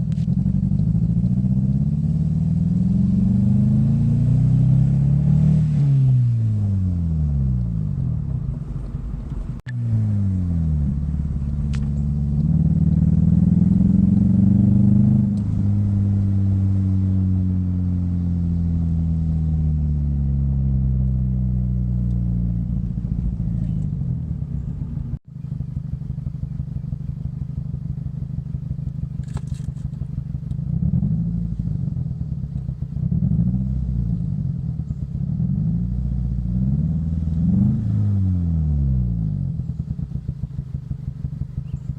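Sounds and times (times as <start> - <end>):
car engine revving: 0.0 - 25.2, 26.1 - 41.9
engine idling roughly: 23.6 - 30.7, 39.6 - 41.9.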